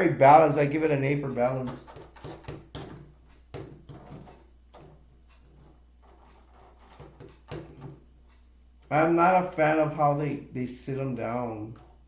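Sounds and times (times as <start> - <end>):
plastic clicks and knocks: 1.7 - 8.1.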